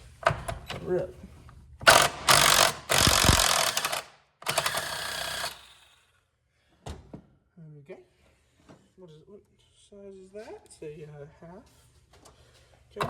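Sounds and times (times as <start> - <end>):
impact wrench hammering bolt: 1.8 - 5.6.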